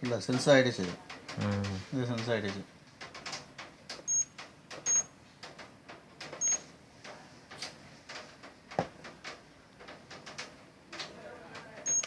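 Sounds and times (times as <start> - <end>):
high electronic alarm beep: 4.1 - 4.3, 4.9 - 5.1, 6.4 - 6.6.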